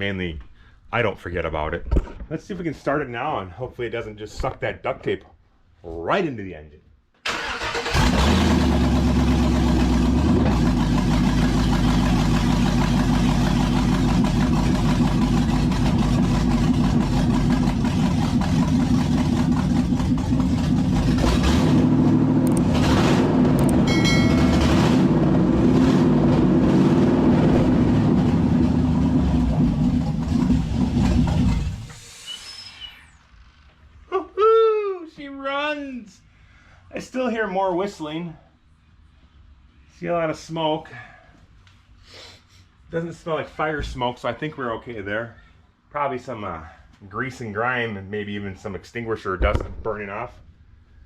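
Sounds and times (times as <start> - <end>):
car engine starting and running: 7.2 - 33.8.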